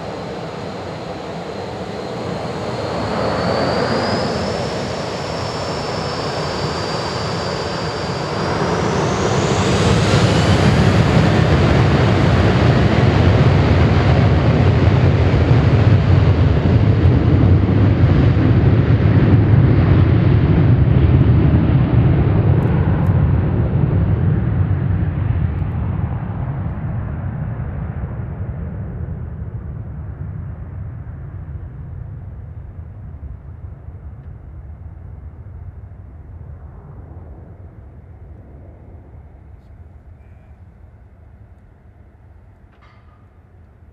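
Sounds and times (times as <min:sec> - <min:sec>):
jet roar: 0:00.0 - 0:40.8
jet engine whine: 0:00.0 - 0:43.9.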